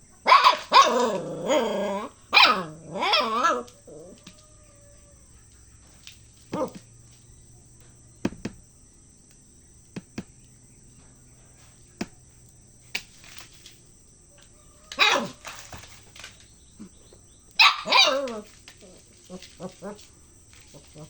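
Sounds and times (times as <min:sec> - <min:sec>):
puppy barking: 0:00.2 - 0:03.7, 0:14.9 - 0:15.7, 0:17.6 - 0:20.1
puppy yipping: 0:14.9 - 0:15.7, 0:17.6 - 0:18.5.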